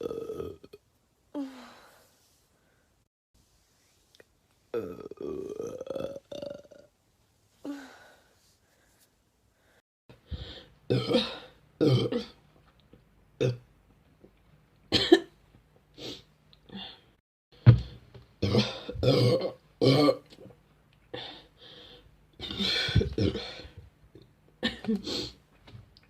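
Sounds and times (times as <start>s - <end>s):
woman burping: 0.0s - 0.8s, 4.8s - 6.9s, 10.9s - 12.4s, 18.4s - 20.2s.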